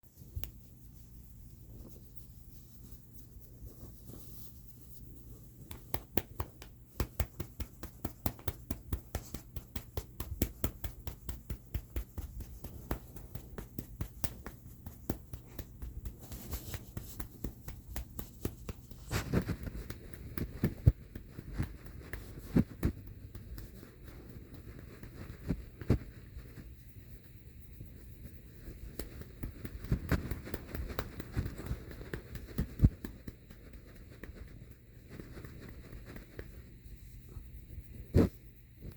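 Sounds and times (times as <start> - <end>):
hand patting a cat: 5.5 - 26.7, 28.3 - 36.7.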